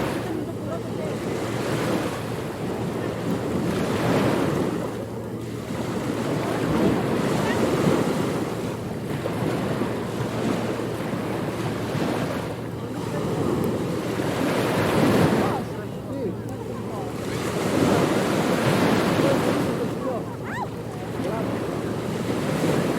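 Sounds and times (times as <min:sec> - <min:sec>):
ocean waves breaking: 0:00.0 - 0:22.9.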